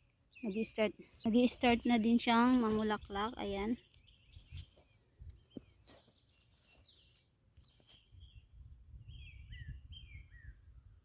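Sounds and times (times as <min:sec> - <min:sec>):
birds chirping and whistling: 0:00.0 - 0:11.0
low wind rumble: 0:08.2 - 0:11.0.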